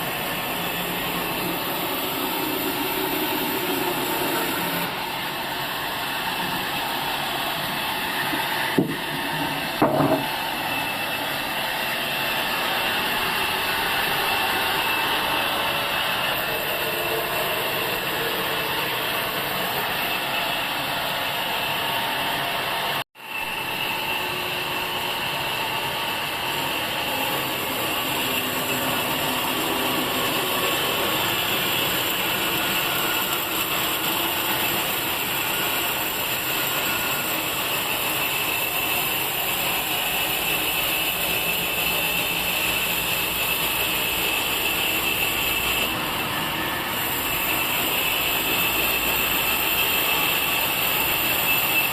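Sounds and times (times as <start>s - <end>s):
sawmill saw cutting log: 0.0s - 51.9s
sharp knocks: 8.7s - 10.3s.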